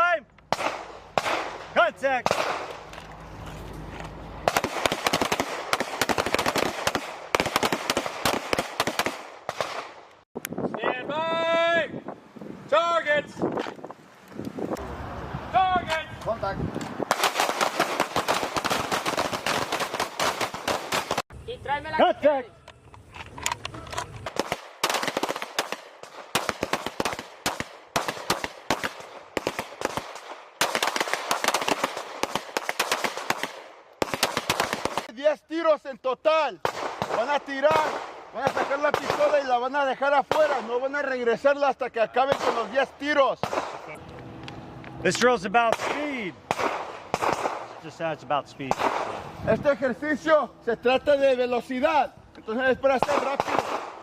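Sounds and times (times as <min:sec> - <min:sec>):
pistols firing rapidly: 0:00.5 - 0:02.8, 0:04.4 - 0:10.0, 0:17.1 - 0:21.2, 0:24.3 - 0:35.1, 0:36.6 - 0:39.6, 0:42.2 - 0:42.8, 0:43.4 - 0:43.8, 0:45.7 - 0:47.8, 0:48.7 - 0:49.2, 0:52.9 - 0:54.0.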